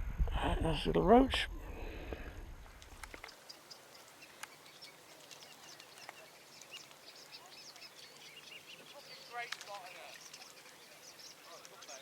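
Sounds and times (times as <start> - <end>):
faint clicks: 2.1 - 12.0
small birds chirping: 2.7 - 12.0.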